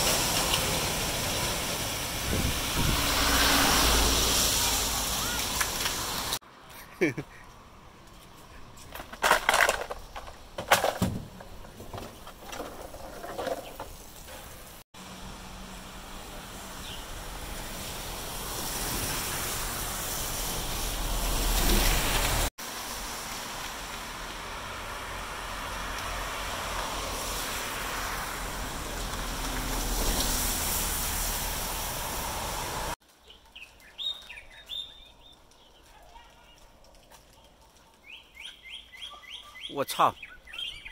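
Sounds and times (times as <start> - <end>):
strong wind gusting: 2.1 - 5.2
wind buffeting microphone: 2.2 - 3.2.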